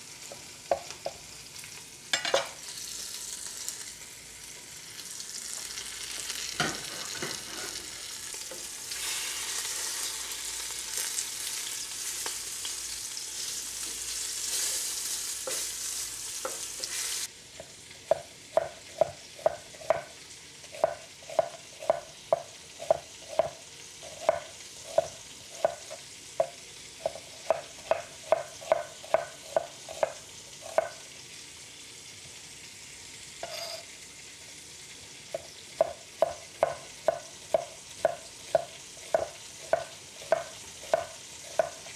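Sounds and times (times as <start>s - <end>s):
meat sizzling in oil: 0.0s - 41.9s
knife chopping on cutting board: 17.6s - 31.0s, 33.4s - 33.8s, 35.3s - 41.9s.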